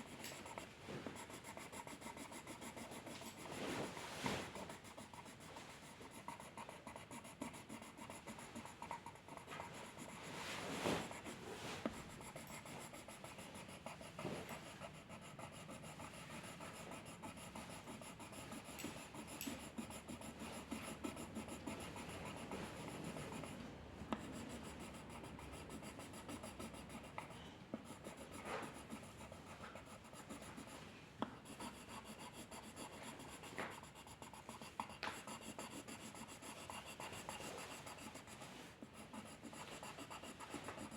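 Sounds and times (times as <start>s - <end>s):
drawing tool scratching on paper: 0.0s - 23.6s, 24.2s - 30.8s, 31.4s - 40.9s.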